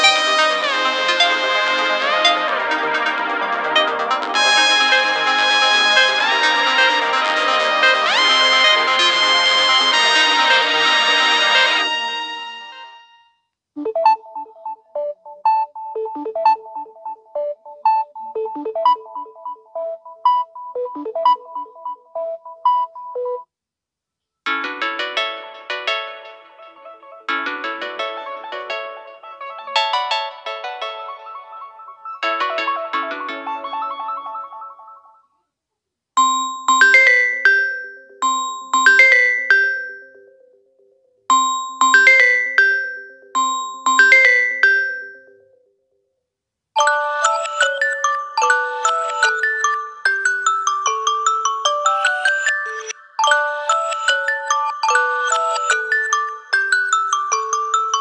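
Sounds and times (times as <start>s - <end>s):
electronic ringtone melody: 0.0s - 23.4s, 24.6s - 35.3s, 41.3s - 45.4s, 46.8s - 58.0s
ringtone of struck notes: 29.8s - 35.2s, 36.2s - 40.4s, 41.3s - 45.5s, 46.8s - 58.0s.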